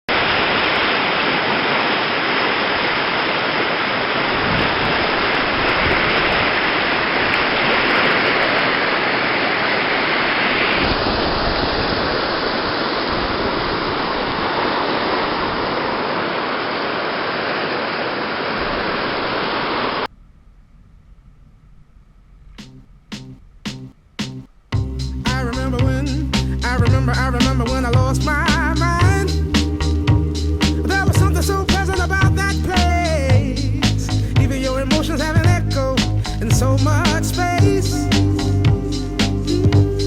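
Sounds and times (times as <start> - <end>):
whitewater rushing: 0.1 - 20.1.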